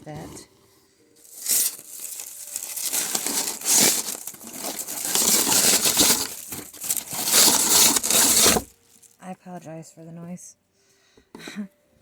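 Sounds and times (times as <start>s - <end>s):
packaging crinkling: 1.2s - 9.2s.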